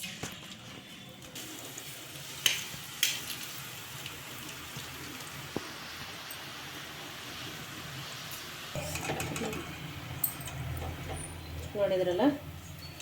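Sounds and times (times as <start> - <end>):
food sizzling in hot oil: 1.4 - 13.0
metal utensil clicks: 8.8 - 11.1.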